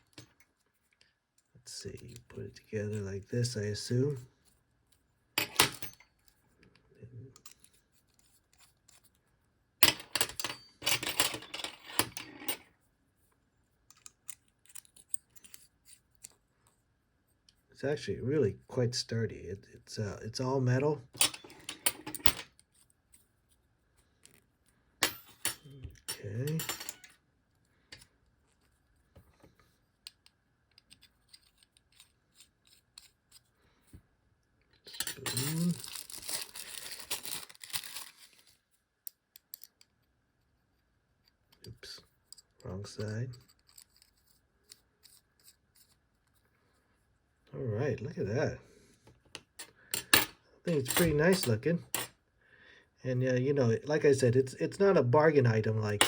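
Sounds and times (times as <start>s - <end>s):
metal utensil parts clicking and rattling: 34.9s - 38.6s.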